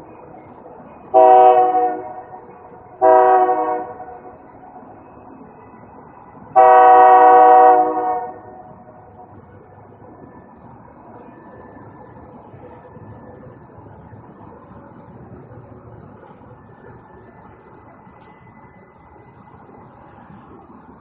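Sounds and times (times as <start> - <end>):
train air horn blasts: 1.1 - 2.4, 3.0 - 4.3, 6.6 - 8.7.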